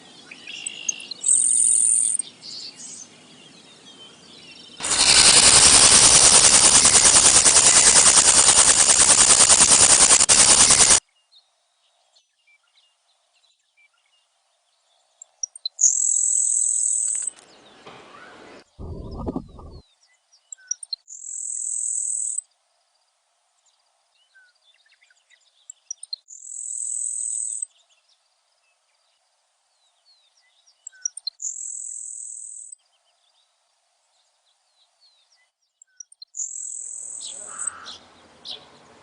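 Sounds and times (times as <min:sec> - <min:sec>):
grasshopper high buzz: 0:04.8 - 0:11.0
grasshopper rasping trill: 0:04.8 - 0:11.0.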